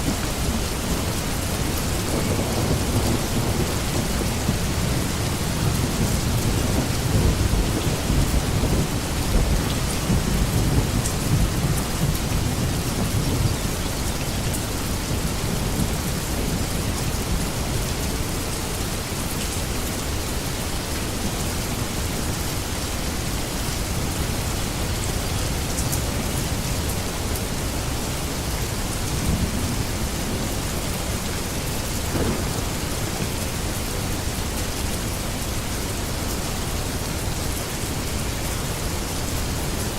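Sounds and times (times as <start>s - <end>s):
steady rain hissing: 0.0s - 39.9s
thunder rumbling: 0.1s - 13.7s, 31.8s - 34.4s.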